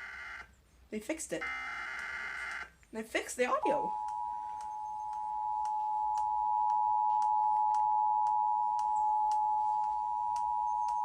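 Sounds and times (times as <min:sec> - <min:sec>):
two-tone alert signal: 0:03.6 - 0:11.0.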